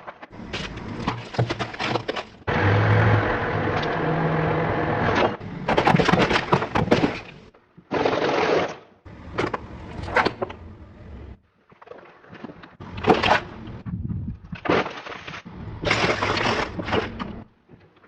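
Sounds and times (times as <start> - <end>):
car tyres crushing objects: 0.0 - 4.1, 4.9 - 13.8, 14.4 - 18.0
tyres rolling: 0.3 - 4.4, 5.0 - 7.5, 15.5 - 18.0
low hum: 2.4 - 7.5, 9.1 - 11.4.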